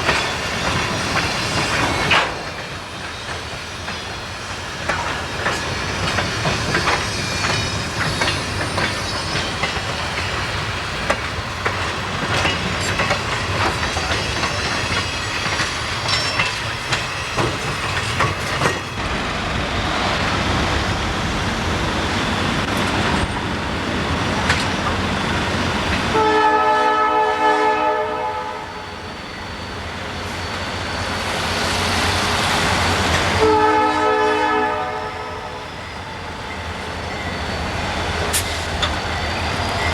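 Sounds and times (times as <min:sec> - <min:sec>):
train wheels clicking over rails: 0:00.0 - 0:26.2, 0:29.9 - 0:33.5, 0:36.2 - 0:39.9
locomotive horn blast: 0:26.1 - 0:28.8, 0:33.4 - 0:35.6.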